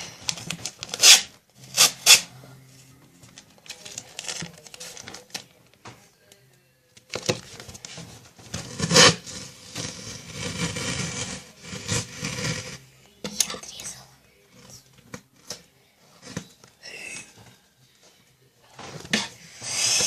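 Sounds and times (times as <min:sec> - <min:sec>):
tape ripping off roll: 0:00.4 - 0:02.3
rustling handling: 0:02.6 - 0:05.8.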